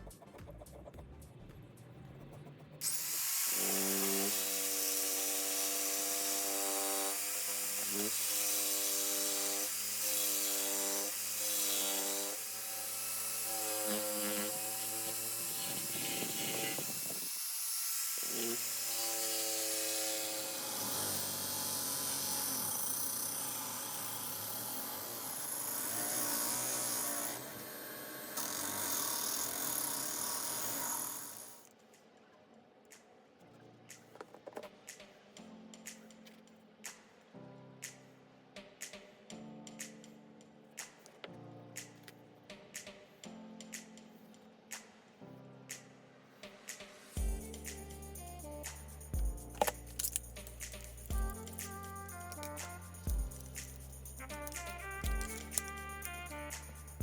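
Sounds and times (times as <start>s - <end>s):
power tool motor whine: 2.8s - 31.6s.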